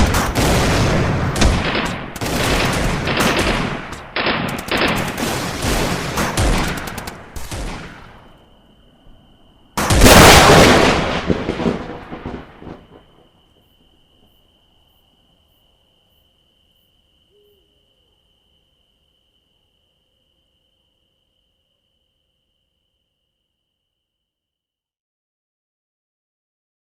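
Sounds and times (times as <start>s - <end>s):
automatic gunfire: 0.0s - 8.2s, 9.8s - 11.8s
loud explosion rumbling: 0.0s - 8.2s, 9.8s - 13.0s.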